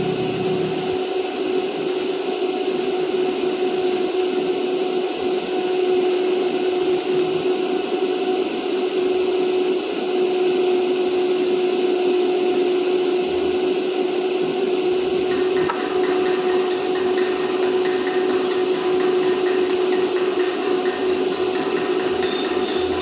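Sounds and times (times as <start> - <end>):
steady hum: 0.0 - 4.5, 5.4 - 7.6
welding arc crackling and hissing: 0.0 - 4.6, 5.2 - 7.6.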